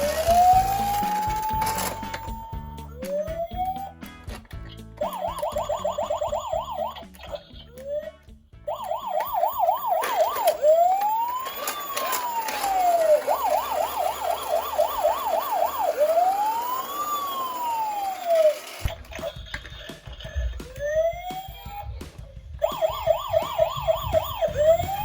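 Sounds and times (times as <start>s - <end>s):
toy police siren: 0.0s - 3.9s, 5.0s - 8.1s, 8.7s - 19.4s, 20.7s - 21.9s, 22.6s - 25.0s.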